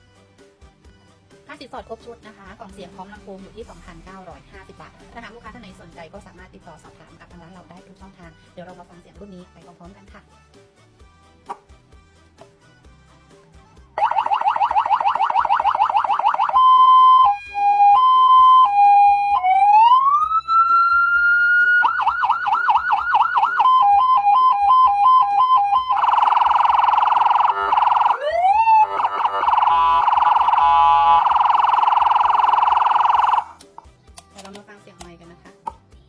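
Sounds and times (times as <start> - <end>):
electronic siren cycling tones: 14.0 - 33.5.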